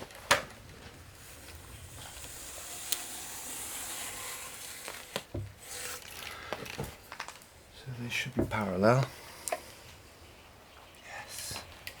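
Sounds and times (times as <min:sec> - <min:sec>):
marking tool scratching timber: 0:01.2 - 0:06.1.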